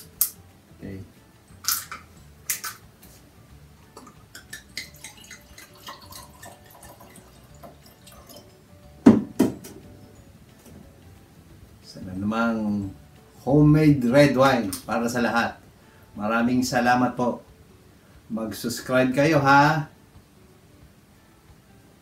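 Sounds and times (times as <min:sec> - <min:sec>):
wine trickling and dripping: 0:03.8 - 0:09.8
glass clinking: 0:03.9 - 0:10.7.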